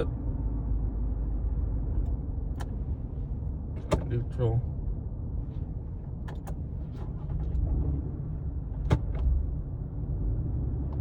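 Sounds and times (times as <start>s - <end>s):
car rolling rumble in cabin: 0.0s - 11.0s.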